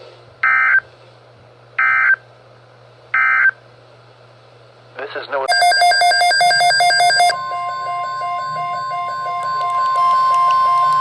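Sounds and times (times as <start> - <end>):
electronic alarm beeping: 0.4 - 0.8, 1.8 - 2.2, 3.2 - 3.6, 5.5 - 11.0
steady warning tone: 5.5 - 11.0.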